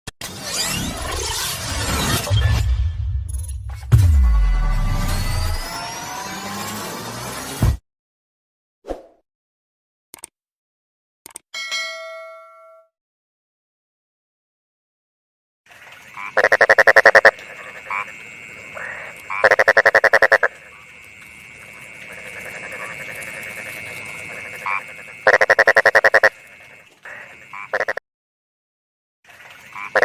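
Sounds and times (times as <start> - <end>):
frog chorus: 15.7 - 28.0, 29.3 - 30.0
frog croaking: 16.0 - 28.0, 29.6 - 30.0.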